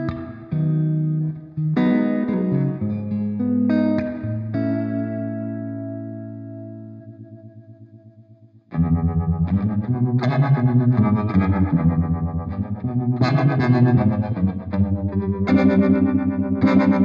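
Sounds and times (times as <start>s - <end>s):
electric guitar tremolo chords: 8.7s - 17.0s.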